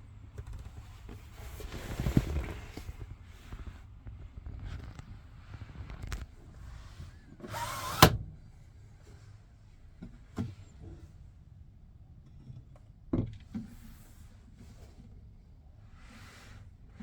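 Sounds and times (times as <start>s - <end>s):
sliding door shutting: 7.4s - 8.2s.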